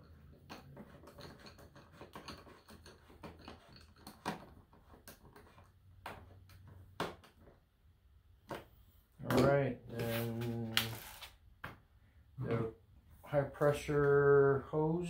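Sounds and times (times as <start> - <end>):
plastic parts clicking and knocking: 0.0 - 7.7, 8.4 - 9.6.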